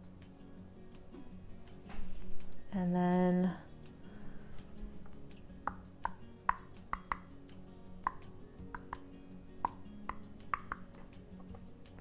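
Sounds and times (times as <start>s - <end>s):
faint background music: 0.0s - 12.0s
crayon tapping on paper: 5.7s - 7.3s, 8.8s - 9.1s, 9.7s - 10.9s.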